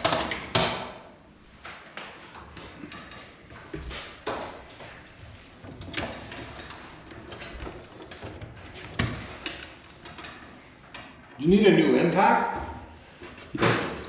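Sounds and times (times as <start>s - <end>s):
metal hardware knocks and clanks: 12.5s - 14.0s.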